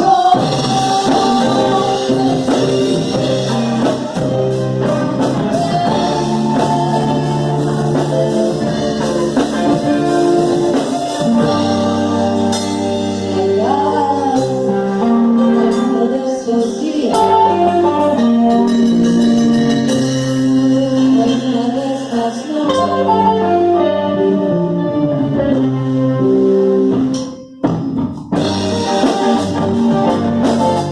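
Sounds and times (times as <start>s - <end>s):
person singing: 0.0s - 26.4s
guitar chords: 0.0s - 30.9s
live band playing: 0.0s - 30.9s.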